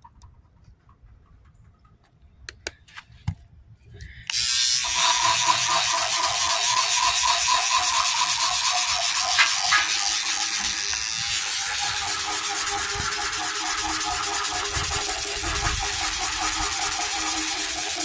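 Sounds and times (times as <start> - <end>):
toothbrush scrubbing wet surface: 4.8 - 18.0.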